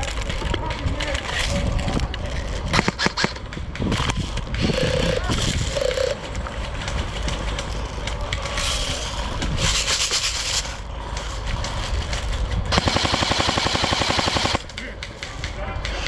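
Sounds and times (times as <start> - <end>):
airsoft gun full-auto burst: 12.7 - 14.7.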